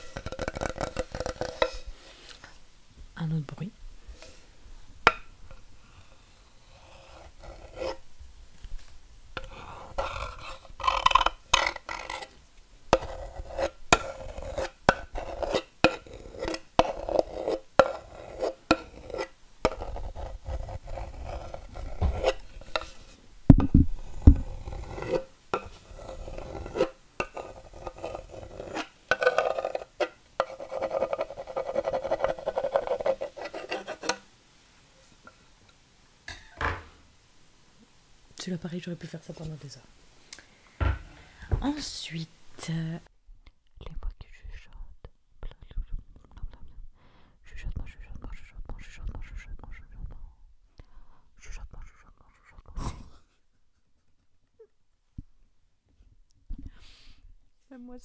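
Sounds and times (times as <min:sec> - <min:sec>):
scraping on a hard surface: 0:00.0 - 0:02.6, 0:06.6 - 0:08.0, 0:08.8 - 0:34.2.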